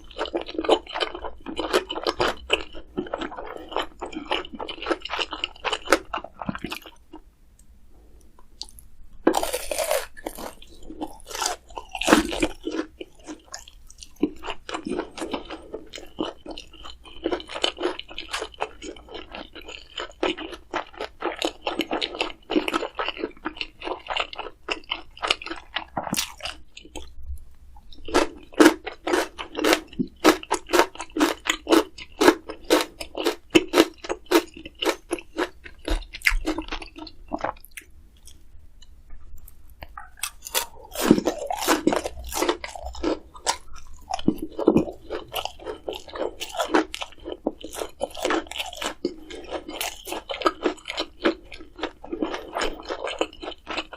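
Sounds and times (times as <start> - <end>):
person chewing crunchy food: 0.0 - 7.3, 8.6 - 27.2, 27.8 - 53.9.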